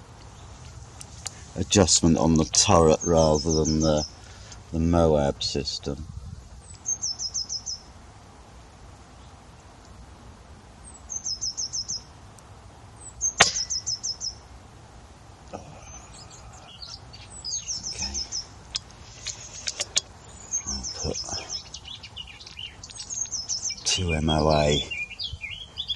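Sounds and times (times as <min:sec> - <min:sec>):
bird trilling: 0:06.8 - 0:07.9, 0:10.9 - 0:12.1, 0:13.0 - 0:14.5, 0:15.6 - 0:25.9
air rifle shot: 0:13.4 - 0:14.0.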